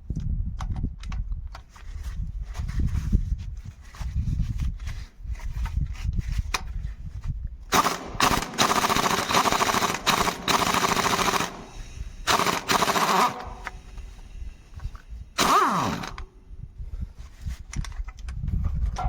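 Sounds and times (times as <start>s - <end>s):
impact wrench hammering: 7.8s - 13.9s, 15.4s - 16.2s.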